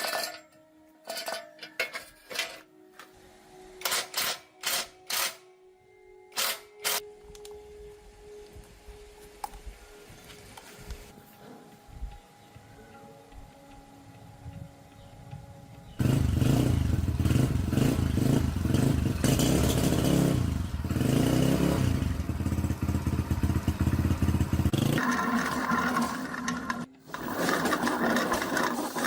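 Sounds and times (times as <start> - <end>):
motorcycle engine running: 15.9 - 29.0.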